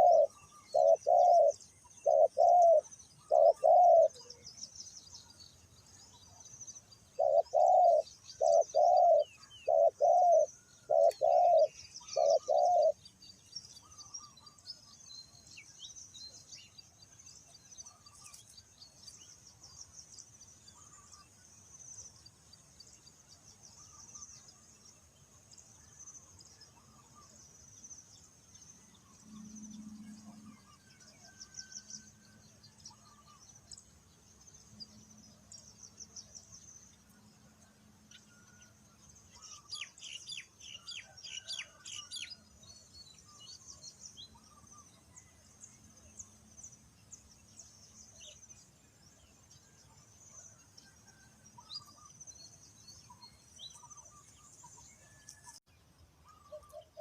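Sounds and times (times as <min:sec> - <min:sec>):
dove cooing: 0:00.0 - 0:04.3, 0:07.2 - 0:13.0.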